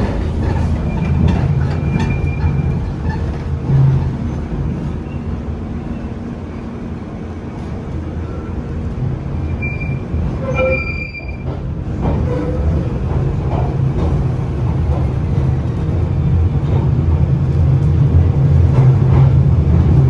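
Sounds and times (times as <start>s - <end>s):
train rumbling: 0.0s - 20.0s
train wheel squeals: 0.4s - 4.0s, 4.9s - 6.2s, 9.4s - 12.9s.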